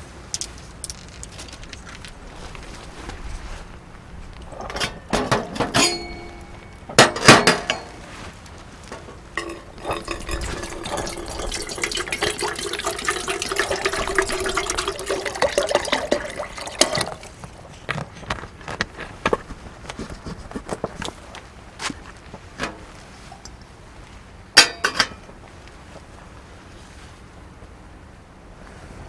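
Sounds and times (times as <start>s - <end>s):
cookware clinking: 4.5s - 8.2s, 8.9s - 17.4s, 24.6s - 25.2s
liquid pouring into vessel: 9.4s - 18.4s.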